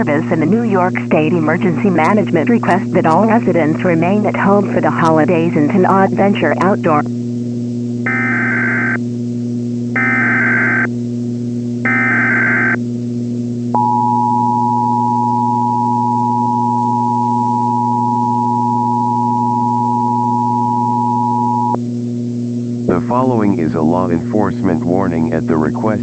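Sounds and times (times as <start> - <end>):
steady low hum: 0.0 - 26.0
two-tone alert signal: 8.1 - 9.0, 10.0 - 10.9, 11.9 - 12.8, 13.8 - 21.8.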